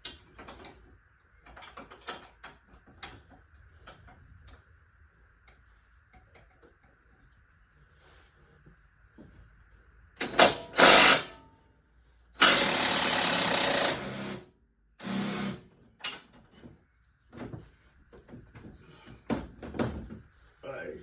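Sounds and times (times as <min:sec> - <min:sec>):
impact wrench undoing a bolt: 0:10.2 - 0:11.3, 0:12.4 - 0:14.0.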